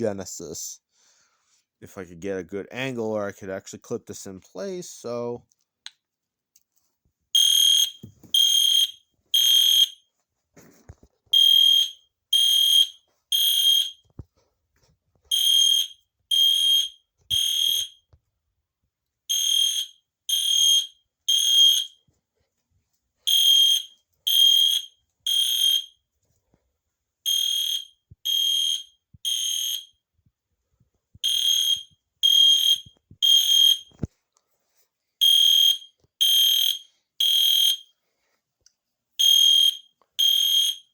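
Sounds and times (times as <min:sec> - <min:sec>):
fire alarm horn beeping: 0:07.4 - 0:10.0, 0:11.4 - 0:14.1, 0:15.3 - 0:18.0, 0:19.3 - 0:22.0, 0:23.3 - 0:26.0, 0:27.3 - 0:30.0, 0:31.2 - 0:34.0, 0:35.2 - 0:38.0, 0:39.2 - 0:40.9.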